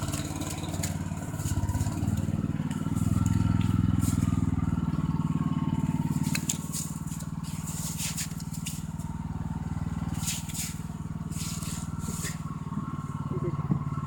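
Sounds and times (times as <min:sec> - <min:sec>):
snowblower engine running: 0:00.0 - 0:14.0
scraping crunches: 0:06.1 - 0:09.1.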